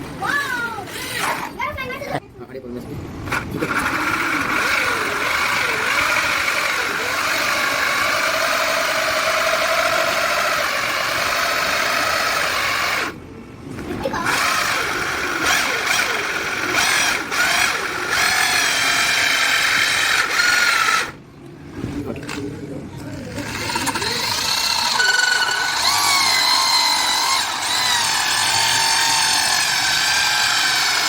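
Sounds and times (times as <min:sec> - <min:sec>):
electric drill spinning: 0:00.9 - 0:01.6, 0:03.3 - 0:13.2, 0:14.2 - 0:21.2, 0:23.2 - 0:31.0.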